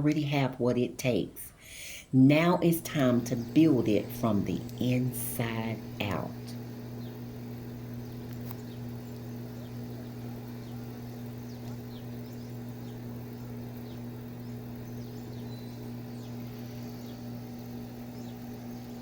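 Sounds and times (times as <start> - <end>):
steady low hum: 0.0 - 19.0
small birds chirping: 3.0 - 19.0.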